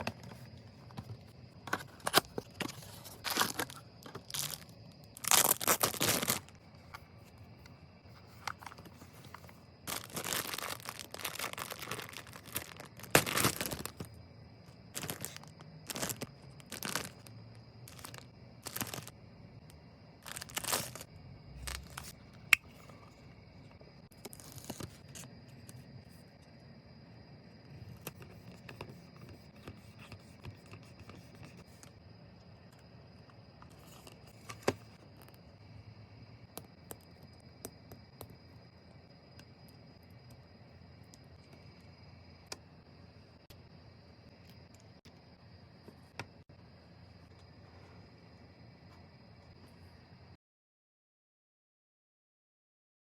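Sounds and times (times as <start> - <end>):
packaging tearing and rustling: 5.2 - 6.5, 9.9 - 14.1, 15.0 - 17.3, 17.9 - 19.1, 20.3 - 21.0.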